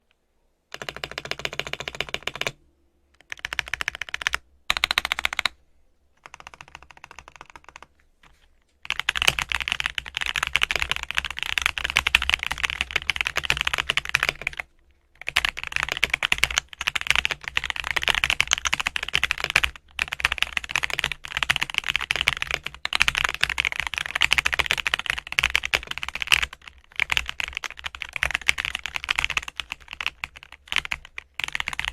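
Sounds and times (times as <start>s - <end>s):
mechanical keyboard typing: 0.7s - 2.6s, 3.2s - 5.6s, 6.2s - 7.9s, 8.8s - 31.9s.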